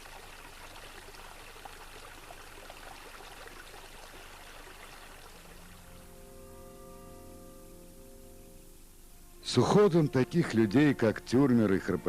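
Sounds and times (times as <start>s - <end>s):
small stream babbling: 0.0s - 6.4s
sustained music notes: 5.5s - 12.0s.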